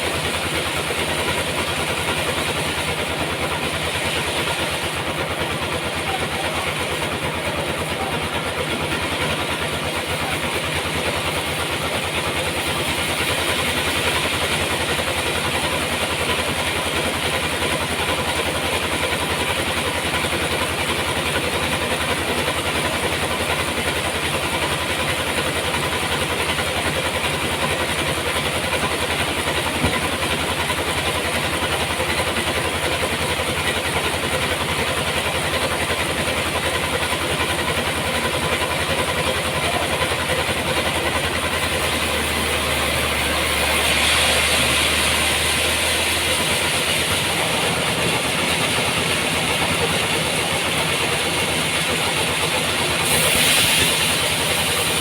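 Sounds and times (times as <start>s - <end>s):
sawmill machinery running: 0.0s - 55.0s.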